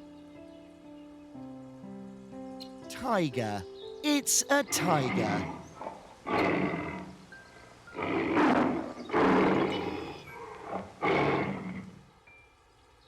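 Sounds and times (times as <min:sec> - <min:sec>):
tiger roaring: 0:08.0 - 0:11.9.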